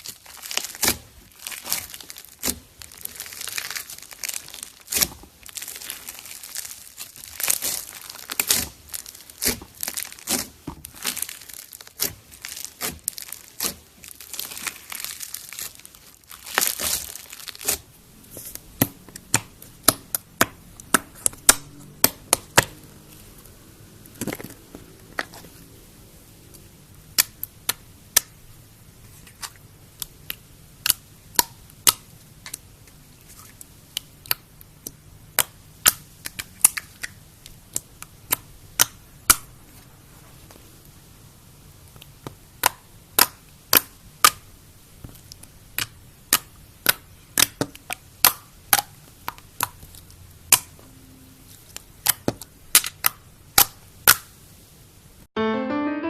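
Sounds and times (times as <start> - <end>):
slime crackling and squishing: 0.0 - 25.7, 27.1 - 28.4, 41.9 - 44.5, 51.4 - 54.4.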